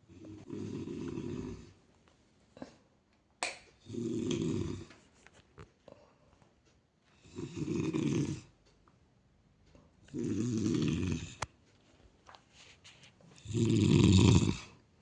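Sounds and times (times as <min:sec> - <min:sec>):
man snoring: 0:00.1 - 0:01.7, 0:03.8 - 0:04.9, 0:07.2 - 0:08.5, 0:10.1 - 0:11.4, 0:13.4 - 0:14.8.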